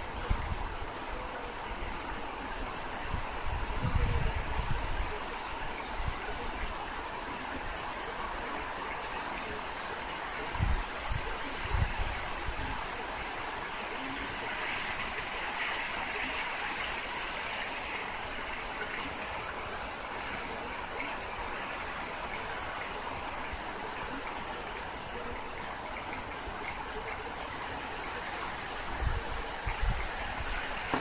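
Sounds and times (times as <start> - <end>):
wind and rain rushing: 0.0 - 31.0
wind gusts thumping microphone: 0.1 - 1.0, 2.9 - 6.3, 28.6 - 31.0.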